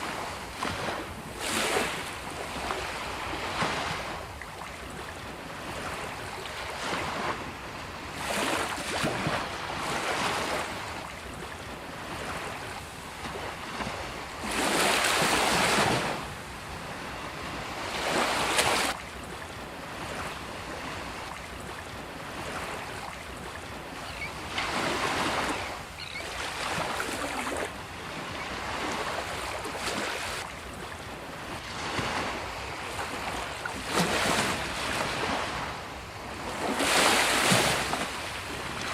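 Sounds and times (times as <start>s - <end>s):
ocean waves breaking on beach: 0.0s - 38.9s.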